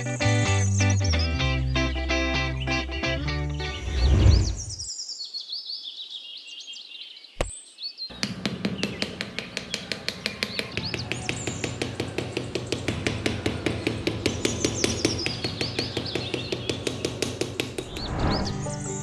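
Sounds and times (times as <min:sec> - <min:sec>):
birds chirping: 0:00.4 - 0:19.0
rapid evenly spaced knocks: 0:08.1 - 0:18.1.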